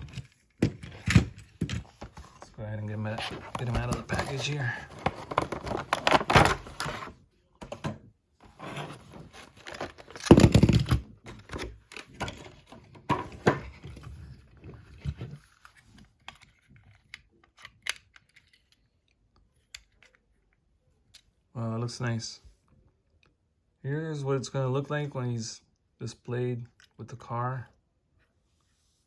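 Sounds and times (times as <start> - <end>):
packaging crinkling and tearing: 3.1 - 7.1.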